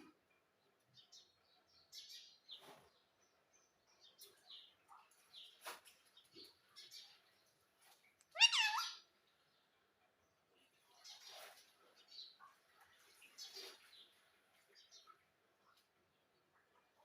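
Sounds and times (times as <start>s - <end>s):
parrot chirps and clicks: 8.2s - 9.0s.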